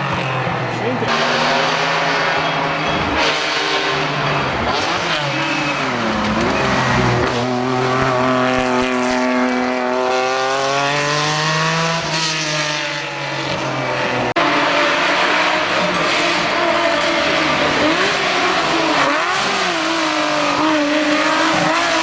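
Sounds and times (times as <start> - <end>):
rally car engine driven hard: 0.0 - 22.0.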